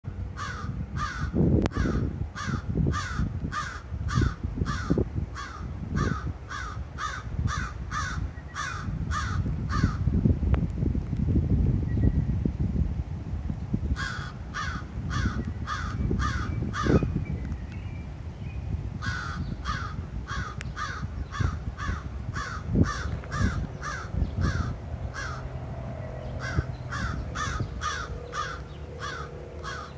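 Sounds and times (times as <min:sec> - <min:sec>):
steady low rumble: 0:00.1 - 0:29.9
crows cawing: 0:00.4 - 0:10.0, 0:14.0 - 0:17.0, 0:19.0 - 0:25.5, 0:26.4 - 0:29.9.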